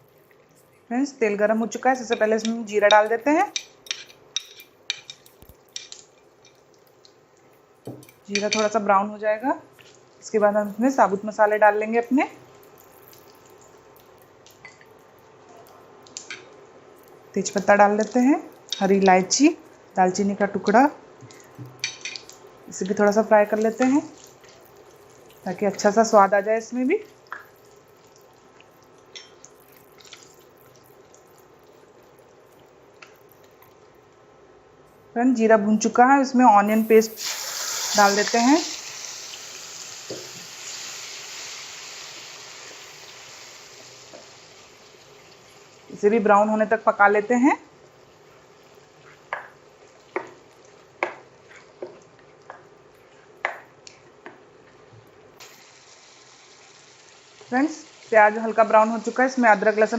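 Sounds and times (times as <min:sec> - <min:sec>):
spices sizzling in hot oil: 0:00.0 - 0:34.6, 0:36.6 - 0:59.9
onion paste frying: 0:00.0 - 0:35.1, 0:36.6 - 0:59.9
small crackling pops: 0:03.5 - 0:07.6, 0:12.4 - 0:17.2, 0:27.0 - 0:34.2.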